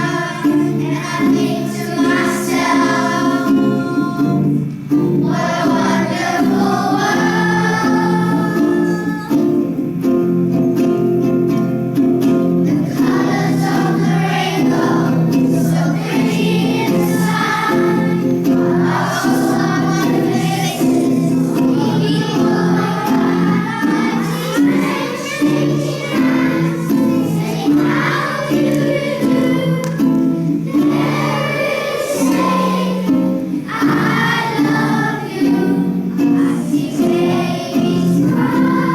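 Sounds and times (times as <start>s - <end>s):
long held accompaniment chords: 0.0s - 11.0s, 12.4s - 38.9s
children's choir singing: 0.0s - 38.9s.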